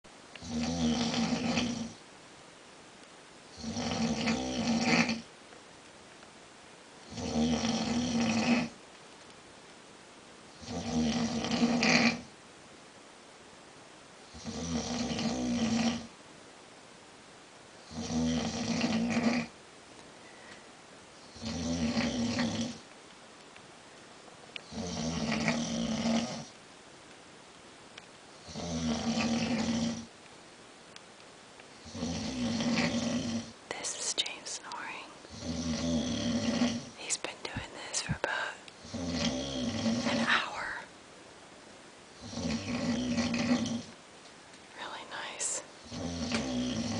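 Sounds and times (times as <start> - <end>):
man snoring loudly: 0.4 - 2.0, 3.6 - 5.3, 7.1 - 8.8, 10.6 - 12.3, 14.3 - 16.1, 17.9 - 19.5, 21.2 - 22.8, 24.7 - 26.5, 28.4 - 30.1, 31.8 - 33.6, 35.3 - 37.0, 38.8 - 40.6, 42.2 - 43.9, 45.8 - 46.9.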